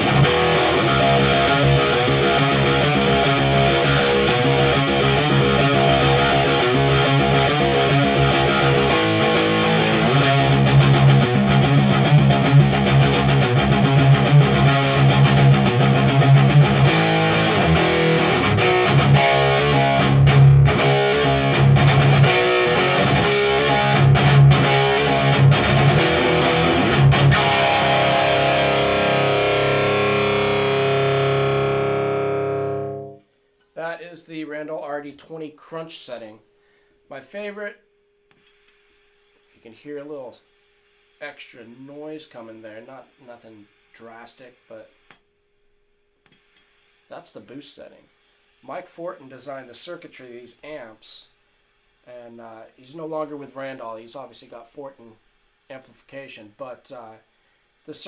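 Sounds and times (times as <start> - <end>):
distorted electric guitar: 0.0 - 33.2.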